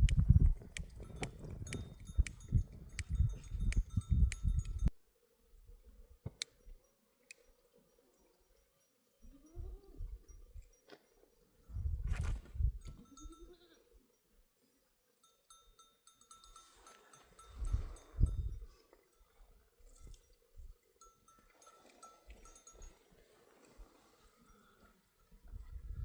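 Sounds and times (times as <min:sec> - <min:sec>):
animal bells ringing: 0:00.8 - 0:04.9, 0:12.9 - 0:14.3, 0:15.1 - 0:25.6.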